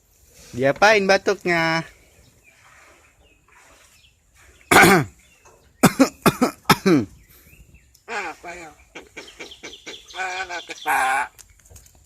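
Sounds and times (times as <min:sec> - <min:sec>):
bird mimicking coughs: 0:04.6 - 0:05.2, 0:05.8 - 0:07.2.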